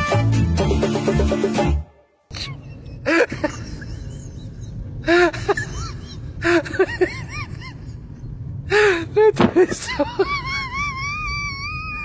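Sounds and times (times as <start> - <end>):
steady low rumble: 2.3 - 12.0.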